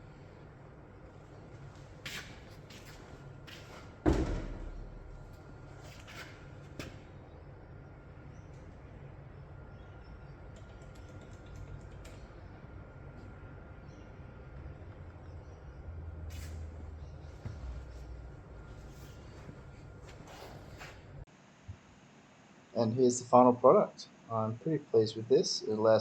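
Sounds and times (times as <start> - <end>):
low steady hum: 0.0 - 26.0.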